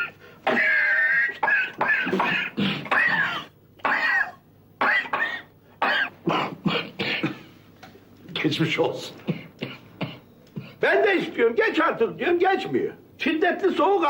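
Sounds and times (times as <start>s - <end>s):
man coughing: 0.0s - 7.5s, 9.2s - 10.8s.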